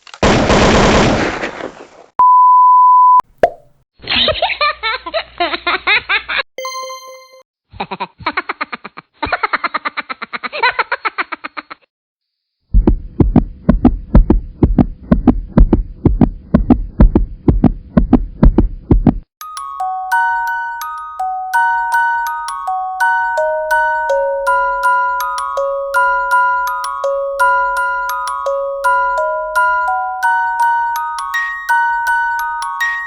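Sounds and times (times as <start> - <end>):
bright ding: 6.6 - 7.4
rapid low beats: 12.8 - 19.2.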